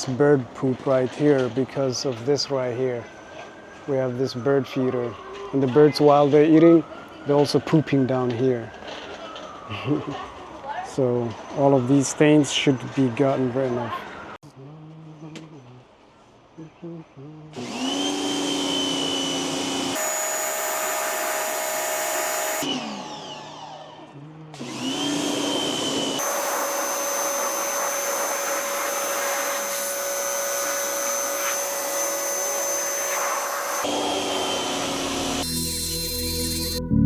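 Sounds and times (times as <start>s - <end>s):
pressure washer running and spraying: 17.6s - 23.8s, 24.6s - 36.8s.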